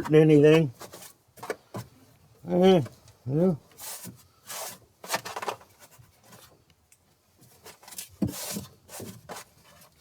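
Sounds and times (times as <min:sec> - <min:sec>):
hand scraping and rustling: 0:03.7 - 0:06.7, 0:07.4 - 0:10.0.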